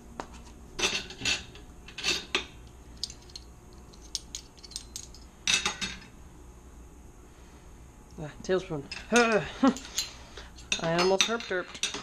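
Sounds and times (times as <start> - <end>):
metal spoons clinking: 8.9 - 12.0.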